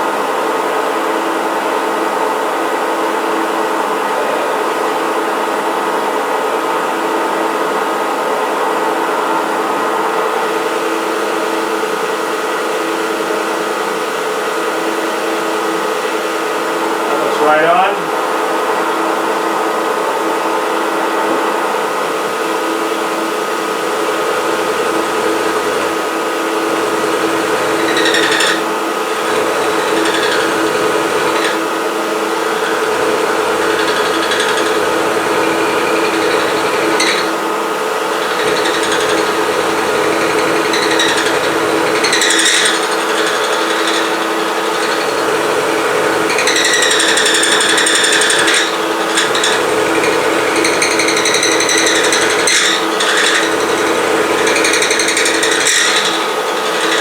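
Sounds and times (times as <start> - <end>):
cutter ringing squeals: 17.1 - 18.1, 24.0 - 57.0
milling machine drone: 24.2 - 57.0.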